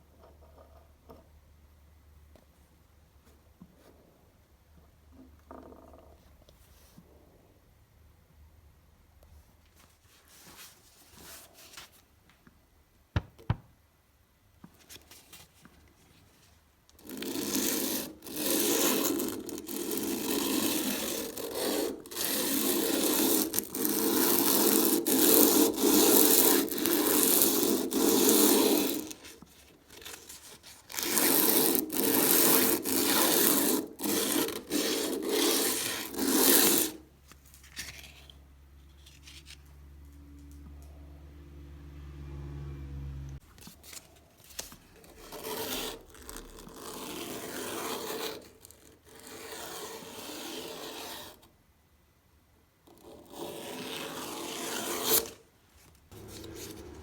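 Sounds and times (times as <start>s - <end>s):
abrasive scraping on metal: 56.1s - 57.0s.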